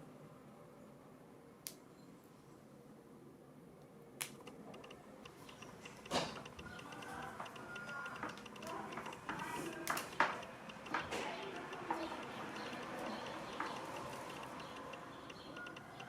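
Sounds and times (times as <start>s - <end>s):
small mechanical clicks and creaks: 4.4s - 16.0s.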